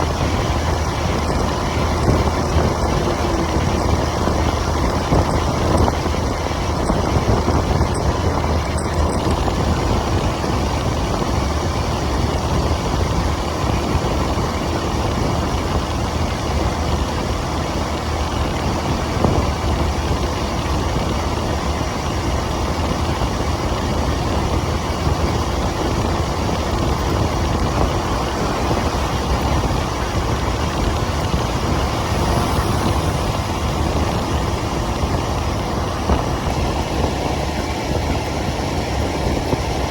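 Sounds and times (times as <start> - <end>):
motorcycle engine running: 0.0 - 39.9
road noise: 0.0 - 39.9.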